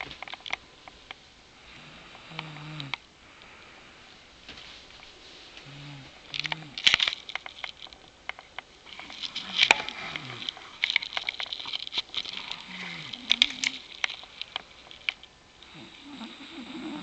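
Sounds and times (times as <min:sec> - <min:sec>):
person snoring: 0:01.7 - 0:03.0, 0:05.6 - 0:06.8, 0:09.4 - 0:10.8, 0:12.3 - 0:13.8, 0:15.6 - 0:17.0.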